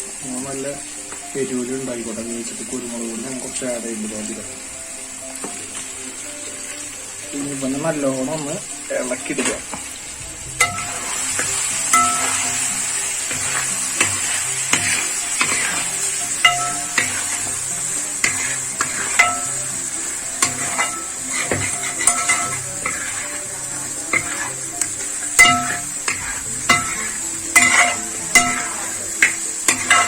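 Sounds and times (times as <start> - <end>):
spices sizzling in oil: 0.0 - 30.0
spatula scraping metal pan: 10.6 - 30.0.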